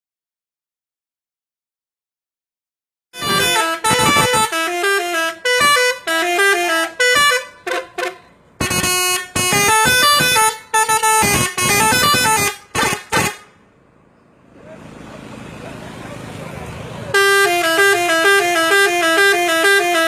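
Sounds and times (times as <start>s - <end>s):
melody horn playing tunes: 3.2s - 13.5s, 17.1s - 20.0s.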